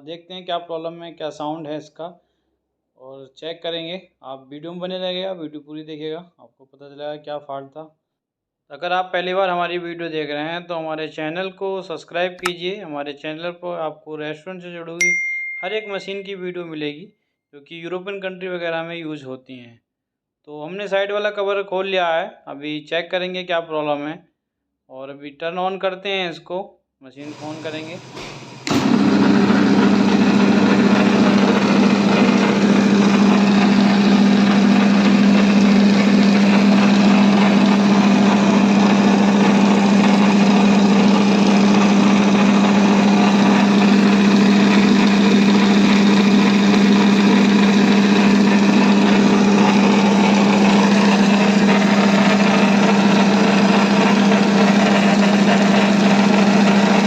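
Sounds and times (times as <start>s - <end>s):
motor humming: 27.2s - 57.0s
dense mechanical noise: 27.3s - 57.0s.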